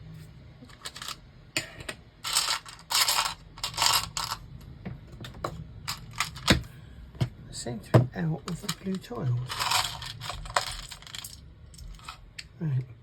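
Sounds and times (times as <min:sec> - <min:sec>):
plastic pieces clattering in pot: 0:00.7 - 0:01.2, 0:02.2 - 0:04.4, 0:05.9 - 0:06.6, 0:08.5 - 0:12.2.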